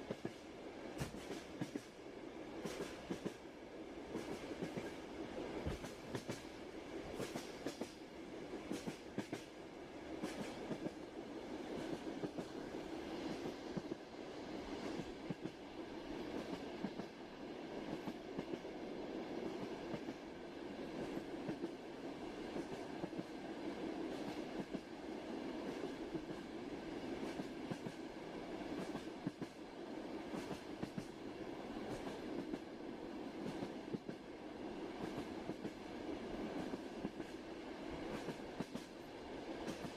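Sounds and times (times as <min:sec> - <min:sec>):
train wheels clacking on track: 0:00.0 - 0:02.0, 0:02.6 - 0:03.5, 0:04.1 - 0:09.6, 0:10.2 - 0:11.1, 0:11.7 - 0:14.1, 0:14.8 - 0:15.6, 0:16.3 - 0:17.2, 0:17.8 - 0:18.7, 0:19.4 - 0:20.2, 0:20.9 - 0:21.8, 0:22.4 - 0:23.3, 0:24.1 - 0:24.9, 0:25.6 - 0:31.2, 0:31.8 - 0:32.7, 0:33.3 - 0:34.3, 0:34.9 - 0:39.9
rail car rumble: 0:00.0 - 0:39.9.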